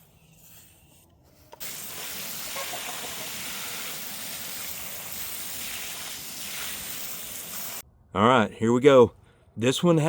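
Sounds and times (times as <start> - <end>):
liquid spraying hiss: 1.6 - 7.8.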